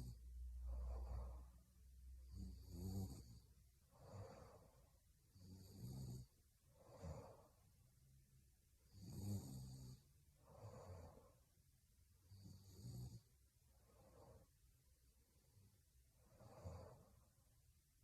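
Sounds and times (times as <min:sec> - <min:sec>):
soft breath out: 0:00.5 - 0:01.8, 0:03.9 - 0:05.0
woman snoring: 0:02.3 - 0:07.5, 0:08.9 - 0:11.4, 0:12.3 - 0:13.2, 0:16.2 - 0:17.2.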